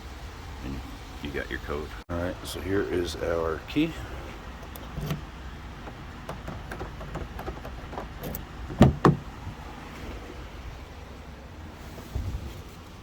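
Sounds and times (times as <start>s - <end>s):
low steady hum: 2.3s - 11.8s
metal parts clicking and tapping: 4.6s - 9.6s
solid knocks: 4.6s - 9.7s.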